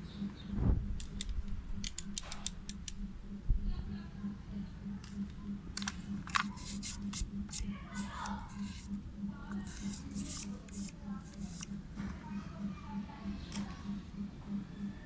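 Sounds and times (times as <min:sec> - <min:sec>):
pulsing low hum: 0:00.0 - 0:15.0
sharp clicks and light taps: 0:01.0 - 0:03.0.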